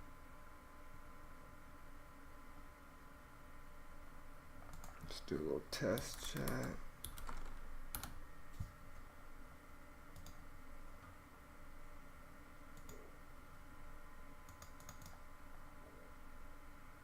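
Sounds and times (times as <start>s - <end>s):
faint background hum: 0.0s - 17.0s
computer keyboard clicks: 4.7s - 5.1s, 5.9s - 8.2s, 10.2s - 10.4s, 12.8s - 13.0s, 14.5s - 15.2s.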